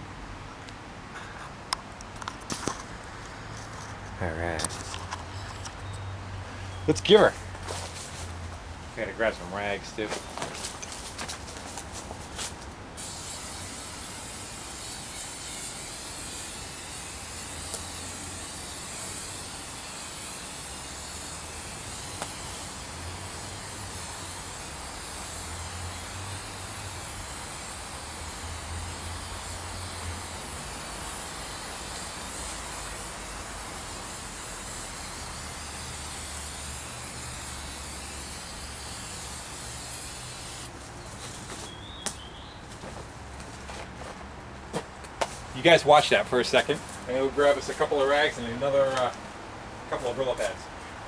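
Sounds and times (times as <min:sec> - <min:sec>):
steady hissing spray: 0:09.0 - 0:40.9, 0:45.5 - 0:49.2, 0:49.9 - 0:50.8.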